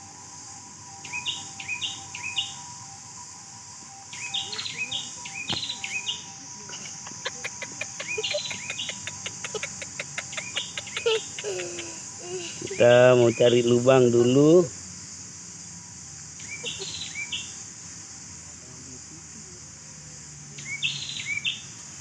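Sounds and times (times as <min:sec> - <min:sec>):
insects droning: 0:00.0 - 0:22.0
bird calling: 0:01.0 - 0:02.7, 0:04.1 - 0:14.4, 0:16.4 - 0:17.6.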